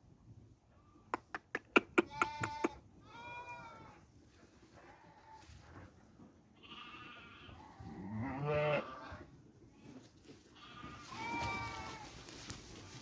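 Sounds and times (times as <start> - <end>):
sheep bleating: 2.0 - 4.0, 6.6 - 9.2, 10.6 - 12.1.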